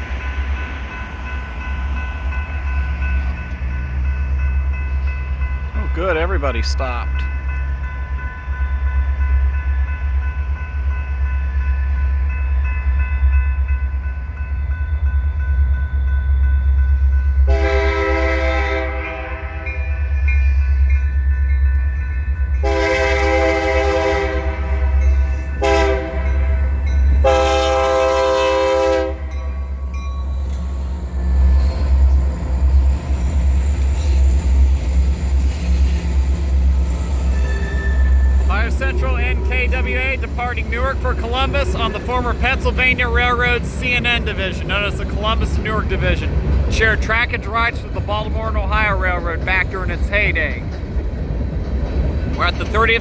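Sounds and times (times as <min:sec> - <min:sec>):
locomotive air horn: 0:17.5 - 0:20.1, 0:22.6 - 0:29.5
diesel engines rumbling: 0:22.4 - 0:53.0.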